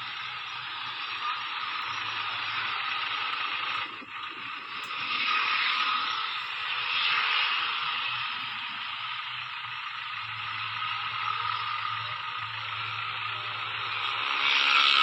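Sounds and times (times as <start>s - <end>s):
faint low hum: 0.0s - 15.0s
steady rushing hiss: 0.0s - 15.0s.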